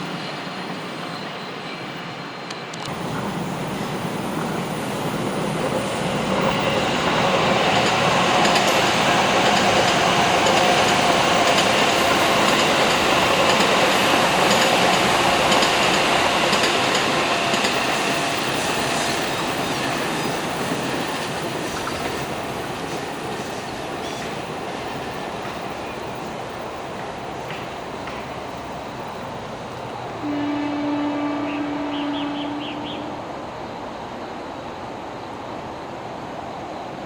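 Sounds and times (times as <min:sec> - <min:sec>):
electric train running: 0:02.4 - 0:30.1.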